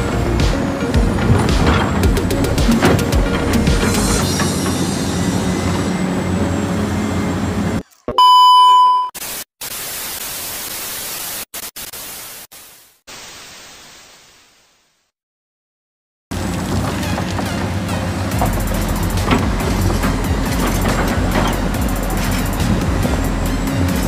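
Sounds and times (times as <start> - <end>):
short loud electronic beep: 8.1 - 9.2
static hiss: 9.2 - 15.1.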